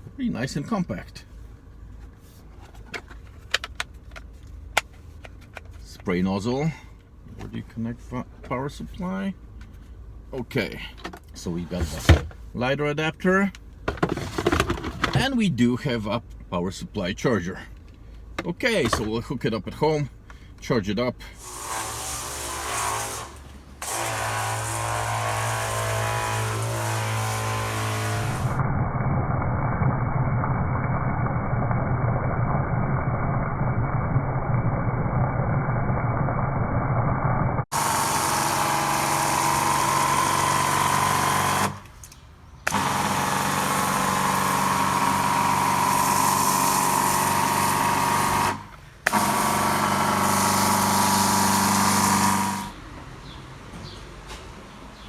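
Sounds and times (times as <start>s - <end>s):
pump motor humming: 37.7s - 41.8s, 42.7s - 52.8s.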